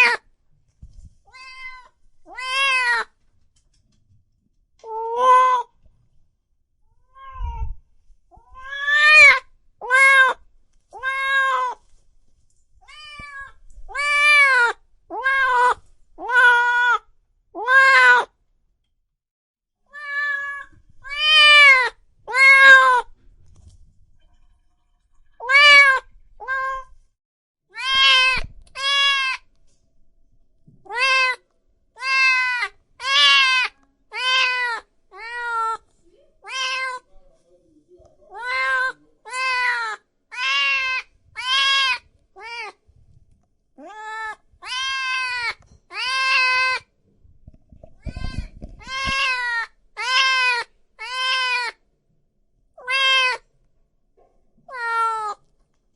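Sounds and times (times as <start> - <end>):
cat meowing: 0.0 - 0.2, 1.3 - 3.1, 4.8 - 5.7, 7.0 - 10.4, 11.0 - 11.8, 12.8 - 18.3, 19.9 - 23.1, 25.4 - 27.0, 27.7 - 29.5, 30.9 - 31.4, 32.0 - 35.8, 36.4 - 37.1, 38.3 - 42.8, 43.8 - 46.9, 48.0 - 51.8, 52.8 - 53.4, 54.7 - 55.4.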